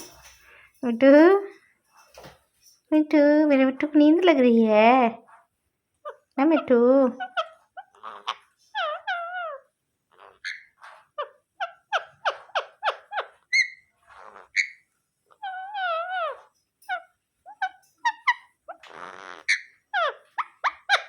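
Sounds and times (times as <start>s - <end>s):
parakeet chattering: 6.0s - 21.0s.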